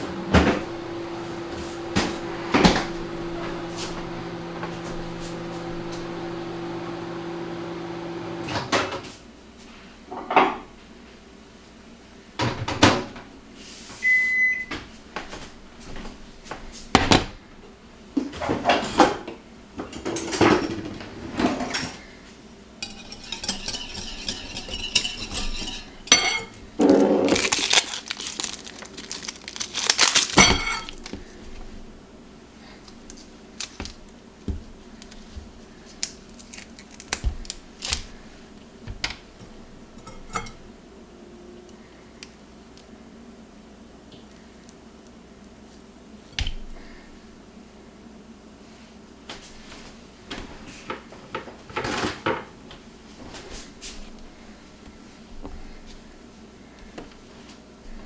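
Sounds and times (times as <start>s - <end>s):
microwave oven humming: 0.0s - 9.3s, 12.0s - 27.5s, 30.4s - 35.0s, 37.3s - 48.4s
short beep: 14.0s - 14.7s
dishes and utensils clattering: 18.3s - 22.0s, 22.8s - 26.6s, 30.4s - 31.0s, 40.0s - 40.7s.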